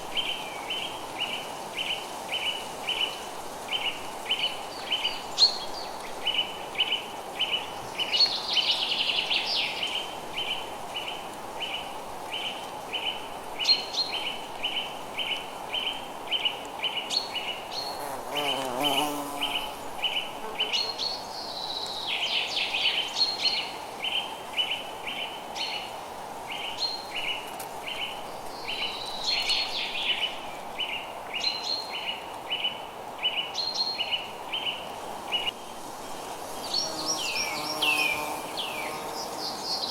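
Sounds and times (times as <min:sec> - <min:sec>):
faint hiss: 0:00.0 - 0:39.9.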